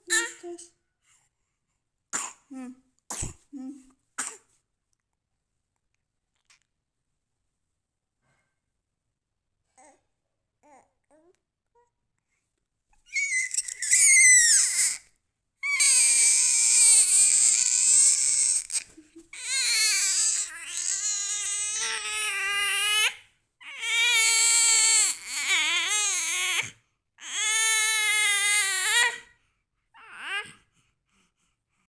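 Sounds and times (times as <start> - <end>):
baby crying: 13.1 - 29.3, 30.0 - 30.5.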